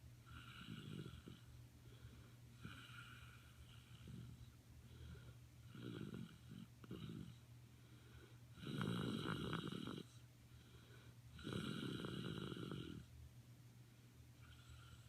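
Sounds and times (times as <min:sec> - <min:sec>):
loud snoring: 0:00.3 - 0:01.5, 0:02.6 - 0:04.5, 0:05.7 - 0:07.4, 0:08.6 - 0:10.2, 0:11.4 - 0:13.1, 0:14.4 - 0:15.0.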